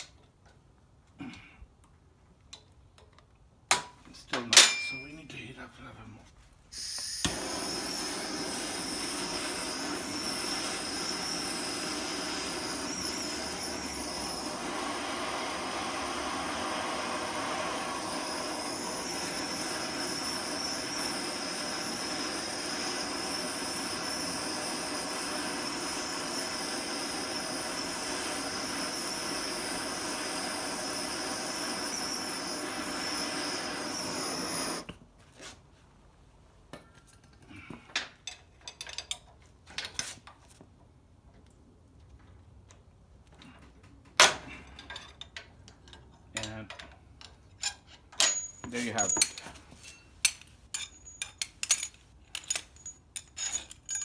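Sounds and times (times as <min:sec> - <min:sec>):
gas torch hissing: 0:06.7 - 0:34.9.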